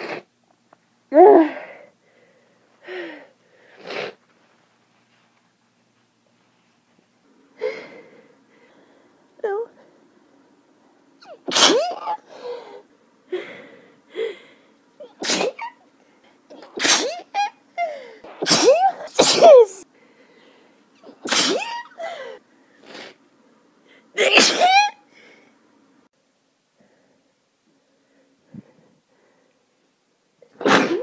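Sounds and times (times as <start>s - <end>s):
person sneezing: 11.2s - 12.8s, 15.0s - 15.8s, 16.5s - 19.8s, 21.0s - 23.2s, 24.2s - 25.0s, 30.6s - 31.0s.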